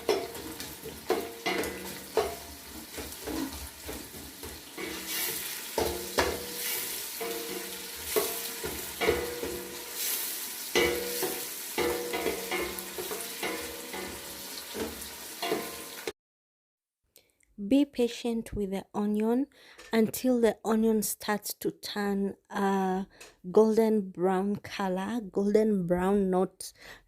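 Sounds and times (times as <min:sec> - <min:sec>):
spoon scraping and knocking pot: 0:00.0 - 0:09.9, 0:10.7 - 0:15.8
onions sizzling in a pot: 0:00.0 - 0:16.1.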